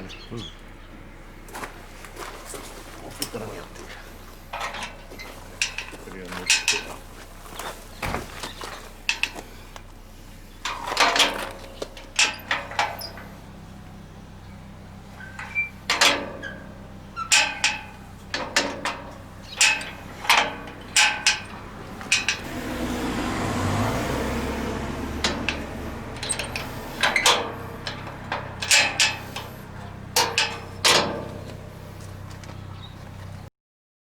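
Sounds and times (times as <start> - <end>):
metal gate latch clacking: 4.5 - 7.0, 10.6 - 13.4, 15.2 - 22.6, 23.8 - 31.8.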